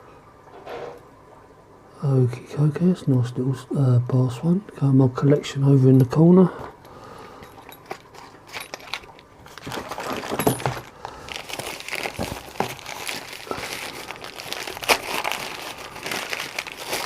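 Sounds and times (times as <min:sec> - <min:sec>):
packaging crinkling and rustling: 0:07.6 - 0:17.0.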